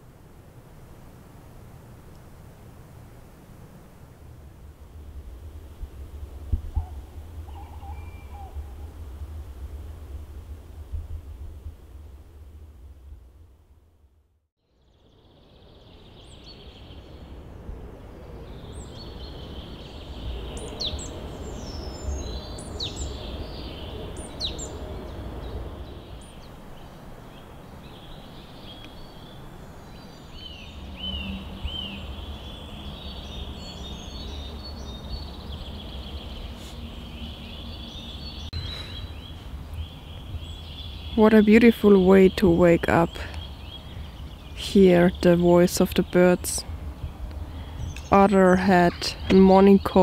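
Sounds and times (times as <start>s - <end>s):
steady low rumble: 0.0s - 14.5s, 17.0s - 50.0s
songbirds singing: 6.6s - 8.9s, 14.6s - 50.0s.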